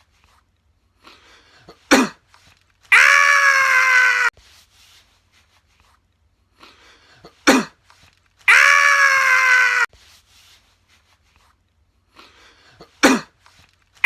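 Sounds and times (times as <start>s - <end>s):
person sneezing: 1.6s - 2.4s, 7.1s - 8.0s, 12.6s - 13.6s.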